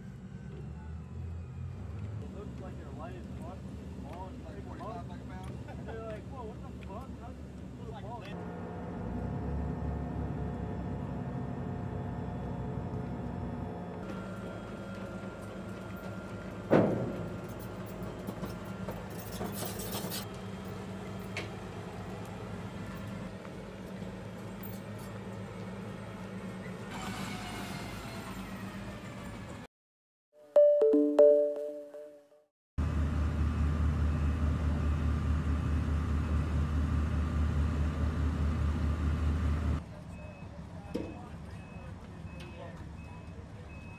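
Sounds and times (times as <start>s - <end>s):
heavy vehicle engine running: 0.0s - 19.2s, 32.8s - 43.7s
heavy engine rumbling: 0.0s - 29.7s.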